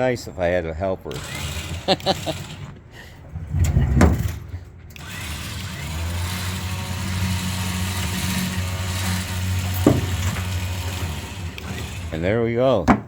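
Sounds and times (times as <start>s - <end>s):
electric motor humming: 1.1s - 2.7s, 5.0s - 12.4s
heavy clunk: 2.6s - 4.8s, 9.0s - 11.9s.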